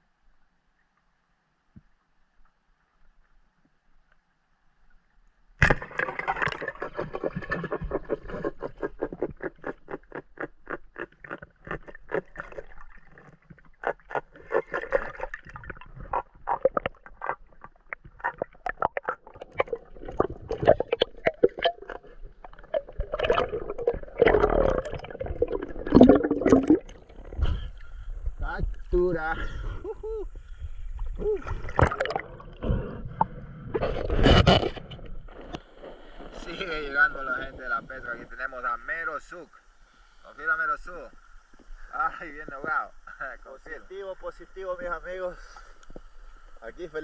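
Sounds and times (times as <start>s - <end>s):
water gurgling and bubbling: 5.8s - 28.5s, 30.8s - 35.5s.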